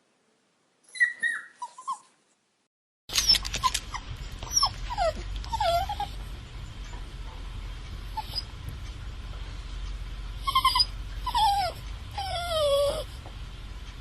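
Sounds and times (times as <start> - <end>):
puppy whining: 0.9 - 2.2, 3.1 - 6.3, 8.1 - 8.6, 10.4 - 13.2.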